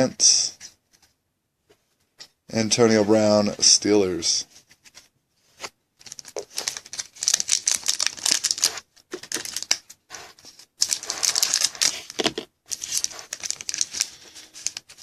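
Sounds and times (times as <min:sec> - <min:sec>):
plastic packaging crinkling: 0:06.0 - 0:15.0.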